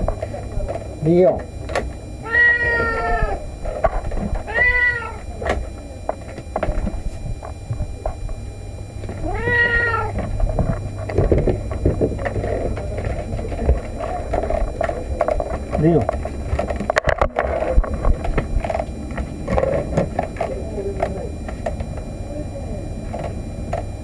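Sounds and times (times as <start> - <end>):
cat meowing: 2.2 - 3.4, 4.5 - 5.2, 9.2 - 10.1.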